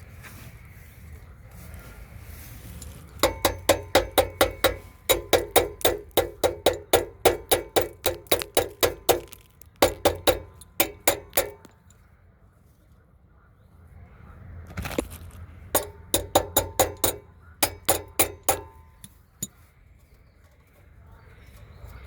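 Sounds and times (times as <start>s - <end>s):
metallic knocks: 3.2s - 11.8s, 15.7s - 19.5s.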